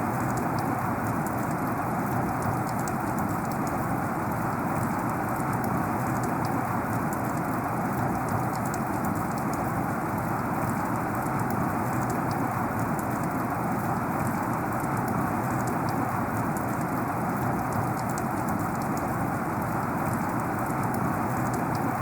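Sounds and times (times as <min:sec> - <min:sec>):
raindrop taps: 0:17.6 - 0:19.1, 0:21.3 - 0:22.0.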